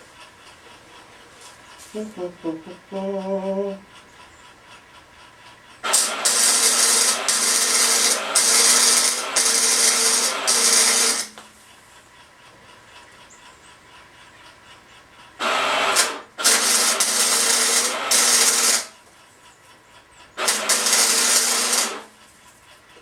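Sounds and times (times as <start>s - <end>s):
arc welder crackling: 5.8s - 11.6s, 15.4s - 19.0s, 20.4s - 22.4s
steady welder hum: 5.8s - 11.7s, 15.4s - 19.0s, 20.4s - 22.3s.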